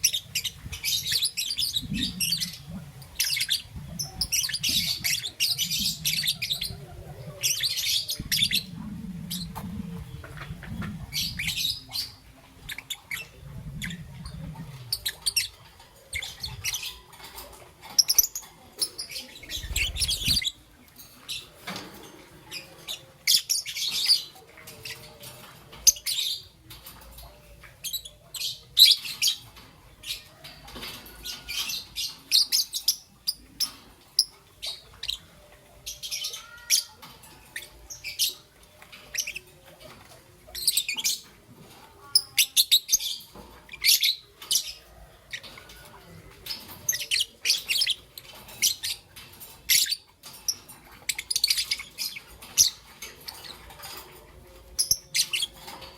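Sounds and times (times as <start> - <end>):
lovebird chirping: 18.0 - 20.6.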